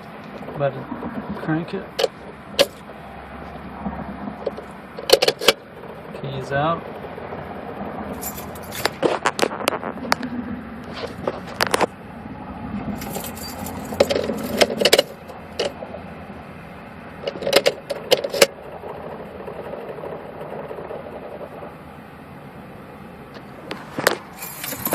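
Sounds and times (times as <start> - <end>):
low steady hum: 0.0 - 24.9
car keys jangling: 2.0 - 2.9, 4.4 - 5.6, 8.2 - 9.2, 13.0 - 15.8, 17.2 - 18.5, 23.7 - 24.9.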